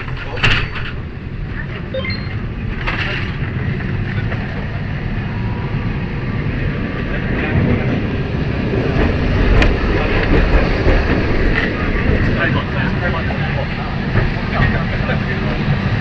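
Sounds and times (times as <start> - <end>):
electric tram rumbling on rails: 0.0 - 16.0.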